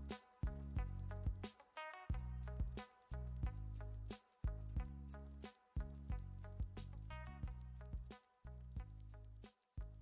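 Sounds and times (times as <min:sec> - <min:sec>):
instrumental music with beat: 0:00.0 - 0:10.0.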